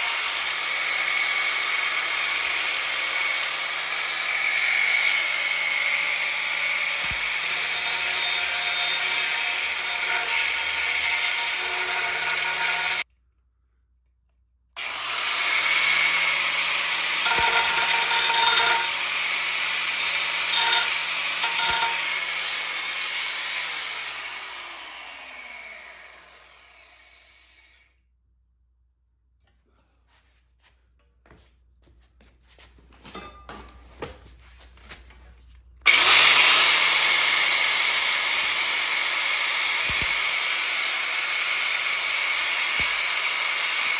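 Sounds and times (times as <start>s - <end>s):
grinder winding down: 0.0s - 13.0s, 14.8s - 27.8s, 35.9s - 43.9s
angle grinder cutting metal: 0.0s - 13.1s, 14.8s - 27.8s, 35.9s - 43.9s.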